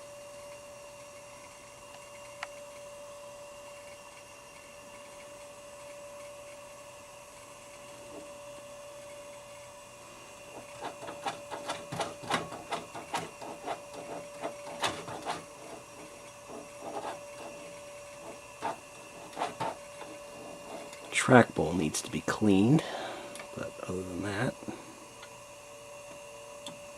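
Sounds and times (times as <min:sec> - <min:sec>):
hard drive whine: 0:00.0 - 0:26.9
rapid hard drive clicks: 0:10.5 - 0:21.2.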